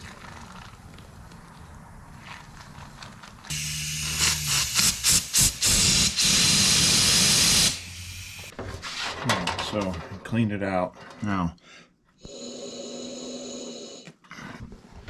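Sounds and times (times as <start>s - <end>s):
compressed air blowgun bursts: 3.5s - 8.5s.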